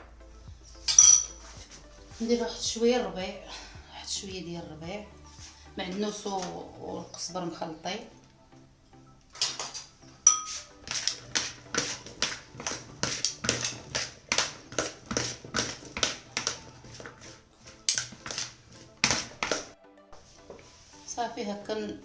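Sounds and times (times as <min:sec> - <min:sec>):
spoon mixing herbs in a bowl: 0:09.4 - 0:21.2.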